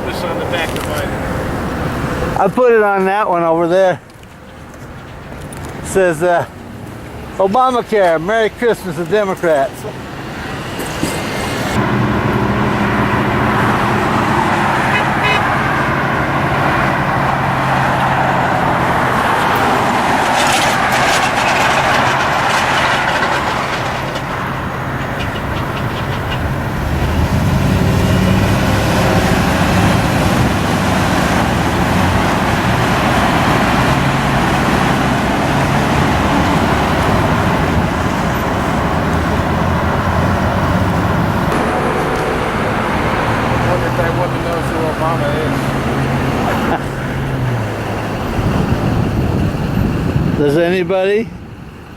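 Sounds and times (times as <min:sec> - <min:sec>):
freeway traffic noise: 0:00.0 - 0:51.9
low truck engine drones: 0:00.0 - 0:51.9
car horn honks: 0:14.8 - 0:15.8.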